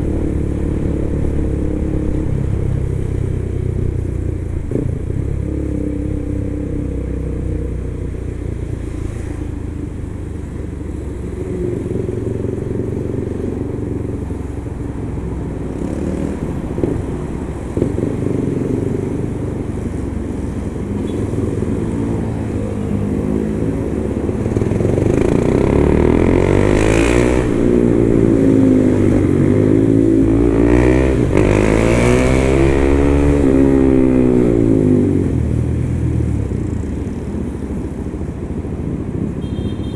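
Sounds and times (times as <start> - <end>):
motorcycle engine revving: 15.6 - 19.9, 20.9 - 37.2.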